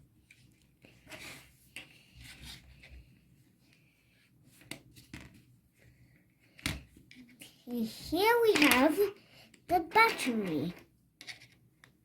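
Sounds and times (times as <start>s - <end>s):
faint scraping and rubbing: 0.2s - 9.2s.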